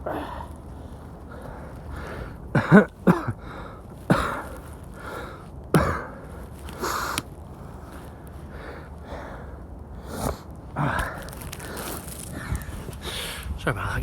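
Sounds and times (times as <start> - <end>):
man coughing: 2.5 - 3.4, 4.1 - 4.5, 5.7 - 6.2.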